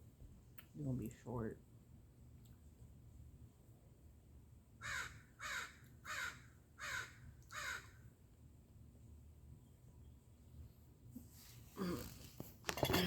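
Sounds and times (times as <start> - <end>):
crow cawing: 4.8 - 8.0.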